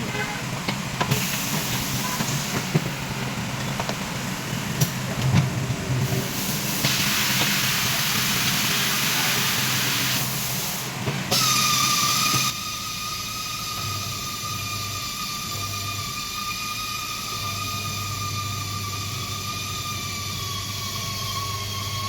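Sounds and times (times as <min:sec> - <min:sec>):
air hissing: 0:01.1 - 0:02.7, 0:06.0 - 0:21.6.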